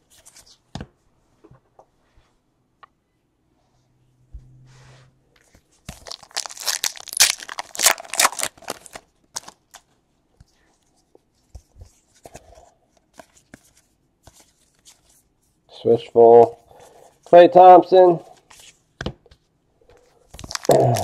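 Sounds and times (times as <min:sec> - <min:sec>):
cards rustling and clicking: 0:05.4 - 0:10.6, 0:11.4 - 0:15.1, 0:20.3 - 0:21.0
wrapper tearing and crinkling: 0:05.9 - 0:09.8, 0:20.3 - 0:21.0.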